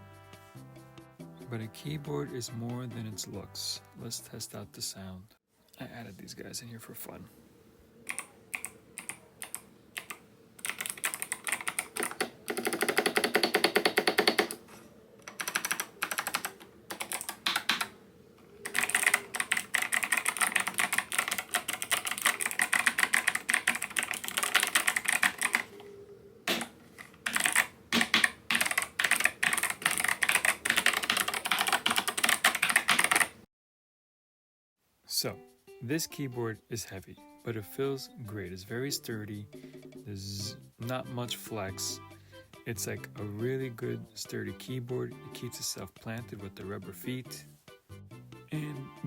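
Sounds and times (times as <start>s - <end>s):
clicky keyboard typing: 8.1s - 14.6s, 15.2s - 18.0s, 18.6s - 25.9s, 26.5s - 33.4s.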